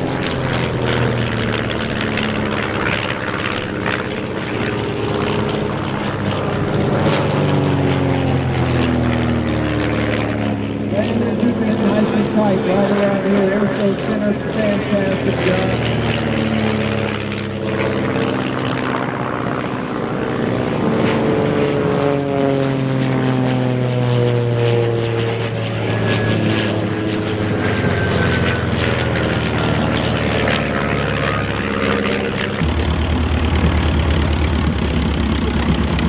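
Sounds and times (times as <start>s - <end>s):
low throbbing engine: 0.0s - 18.5s, 25.5s - 36.0s
propeller aircraft flying past: 0.0s - 36.0s.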